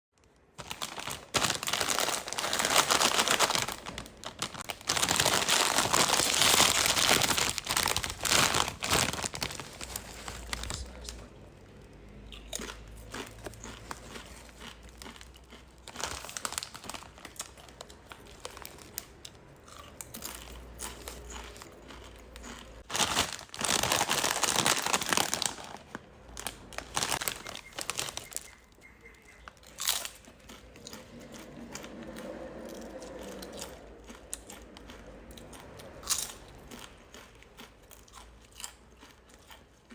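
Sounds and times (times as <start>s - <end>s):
crisp packet crinkling and tearing: 0.2s - 11.3s, 12.6s - 19.4s, 20.2s - 32.0s.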